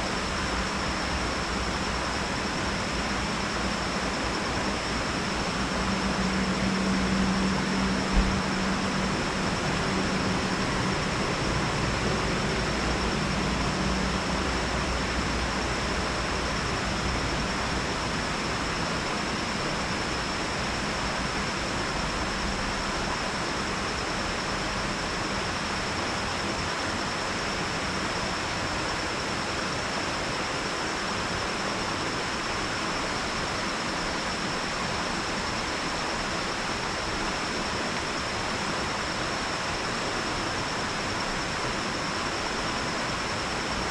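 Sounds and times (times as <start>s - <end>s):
low hum: 0.8s - 17.8s.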